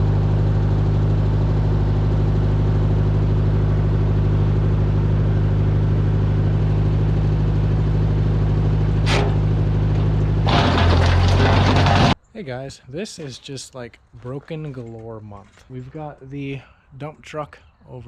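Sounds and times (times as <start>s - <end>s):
engine idling: 0.0s - 12.2s.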